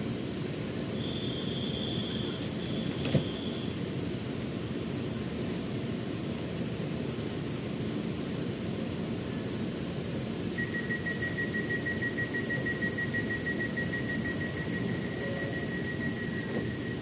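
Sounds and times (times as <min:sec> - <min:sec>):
metro train rumbling: 0:00.0 - 0:17.0
thin high whine: 0:00.9 - 0:03.9, 0:10.6 - 0:17.0.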